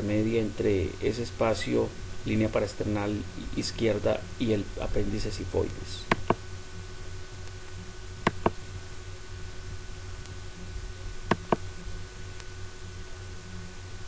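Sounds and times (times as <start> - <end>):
faint electrical hum: 0.0 - 14.0
sharp double clicks: 6.1 - 6.4, 8.2 - 8.6, 11.3 - 11.6.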